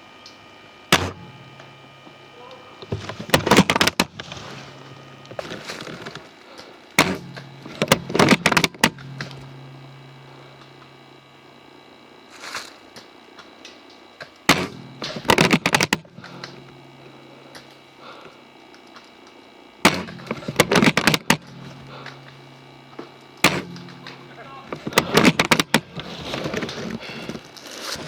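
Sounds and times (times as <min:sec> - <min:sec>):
airsoft rifle shot crack: 0:00.9 - 0:01.8, 0:07.0 - 0:10.8, 0:14.5 - 0:16.9, 0:19.9 - 0:22.7, 0:23.4 - 0:26.1
rapid clicking and clatter: 0:02.8 - 0:06.3, 0:07.0 - 0:10.8, 0:14.4 - 0:17.7, 0:19.9 - 0:28.0.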